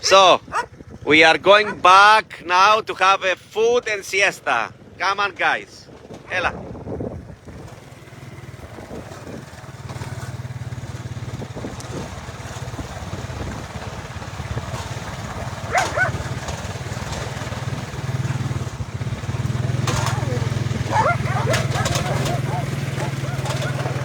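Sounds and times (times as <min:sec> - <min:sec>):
dog whining: 0:00.5 - 0:00.8, 0:15.7 - 0:16.4, 0:19.9 - 0:24.0
small engine running: 0:07.4 - 0:24.0.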